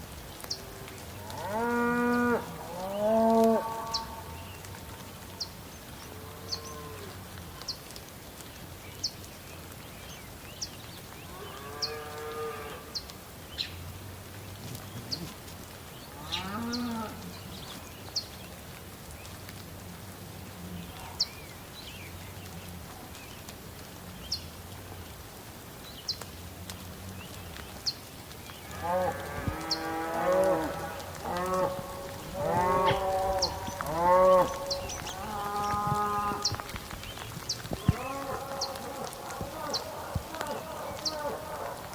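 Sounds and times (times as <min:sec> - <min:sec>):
cattle mooing: 0:28.8 - 0:36.5, 0:37.8 - 0:41.9.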